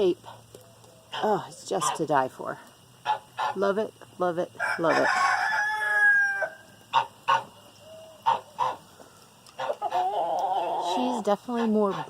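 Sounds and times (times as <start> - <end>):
wavering chicken call: 4.6 - 6.7, 9.6 - 10.8
rooster crowing: 4.6 - 6.8
chicken clucking: 8.2 - 8.8, 9.6 - 11.0.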